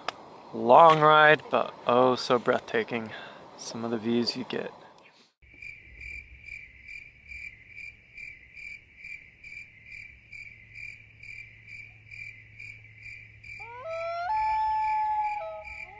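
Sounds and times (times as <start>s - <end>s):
insect chirping: 5.4s - 15.9s.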